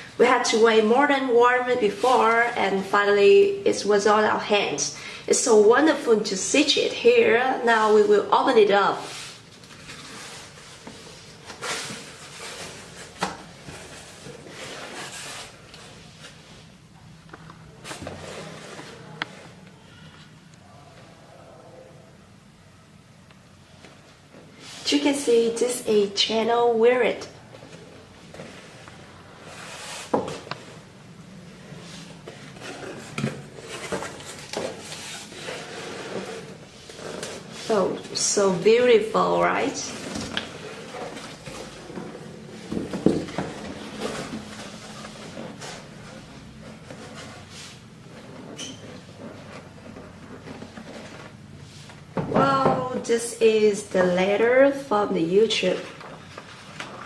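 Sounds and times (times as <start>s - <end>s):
packaging scraping and rustling: 8.9s - 16.7s, 17.7s - 19.5s, 31.7s - 38.3s, 39.5s - 51.6s.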